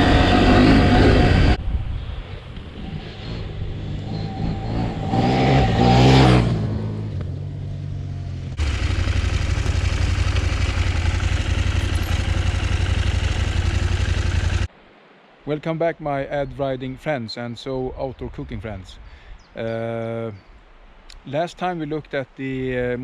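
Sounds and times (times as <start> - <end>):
motorcycle engine revving: 0.0 - 1.6, 2.7 - 14.7
motorcycle and wind rumble at speed: 0.0 - 14.7.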